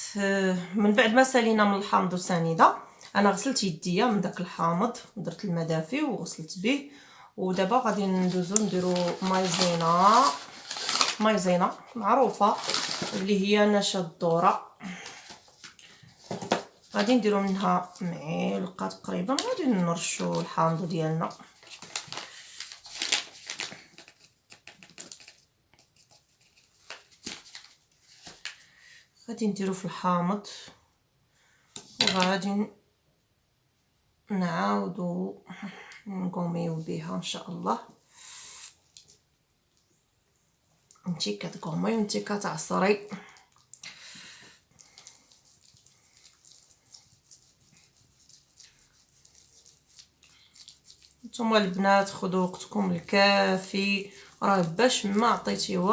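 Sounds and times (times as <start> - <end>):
wet rubbing and squishing of hands: 7.7 - 13.4, 42.2 - 55.9.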